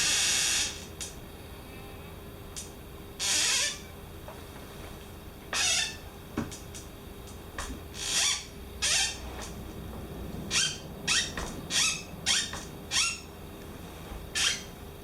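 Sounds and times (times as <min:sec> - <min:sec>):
office chair squeaking: 0:00.1 - 0:00.9, 0:03.2 - 0:03.9, 0:04.8 - 0:06.8, 0:07.6 - 0:14.8.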